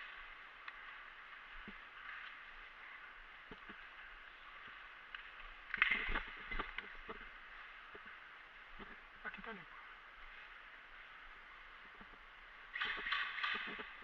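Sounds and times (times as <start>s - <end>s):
steady high hiss: 0.0s - 14.0s
scattered clicks: 12.0s - 14.0s.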